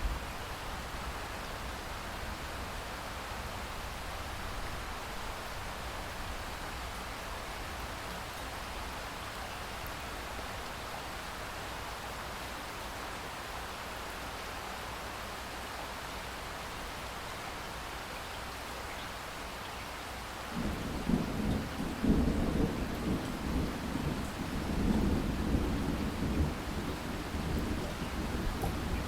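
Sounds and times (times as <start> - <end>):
steady rain hiss: 0.0 - 29.0
low thunder rumble: 20.6 - 29.0.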